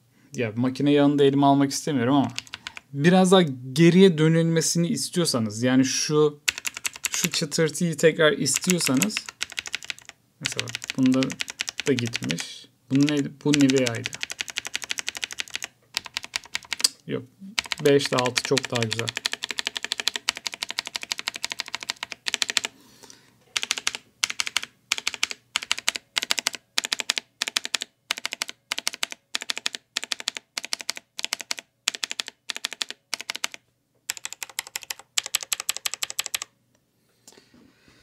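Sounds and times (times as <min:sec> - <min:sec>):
mechanical keyboard typing: 0:02.2 - 0:02.8, 0:06.5 - 0:07.4, 0:08.5 - 0:16.9, 0:17.6 - 0:22.7, 0:23.6 - 0:36.5.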